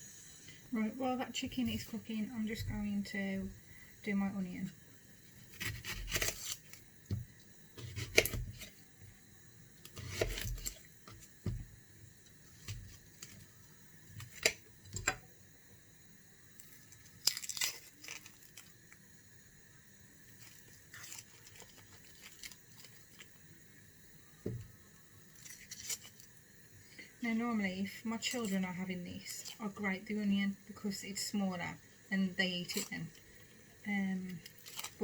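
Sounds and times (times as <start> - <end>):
onion skin crackling and tearing: 5.3 - 7.2, 7.8 - 8.7, 9.8 - 11.7, 12.5 - 15.2, 16.6 - 19.0, 20.2 - 23.5, 25.2 - 26.4, 34.0 - 35.0
knocks on chopping board: 24.4 - 24.7.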